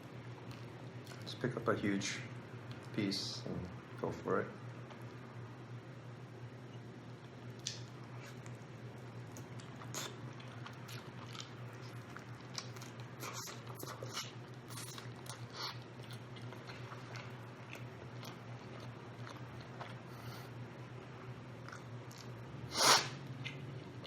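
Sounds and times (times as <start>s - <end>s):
steady low hum: 0.0s - 24.0s
person chewing food: 9.3s - 20.5s, 21.6s - 24.0s.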